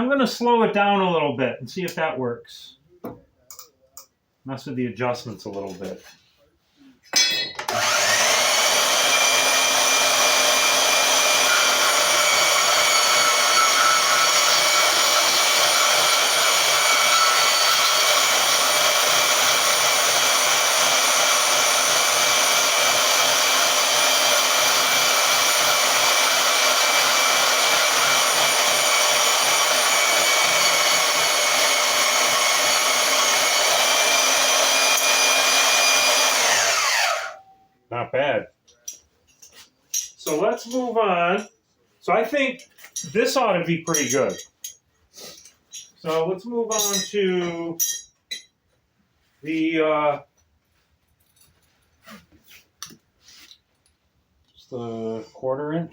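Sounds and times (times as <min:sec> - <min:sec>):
band saw cutting metal: 0:07.2 - 0:37.4.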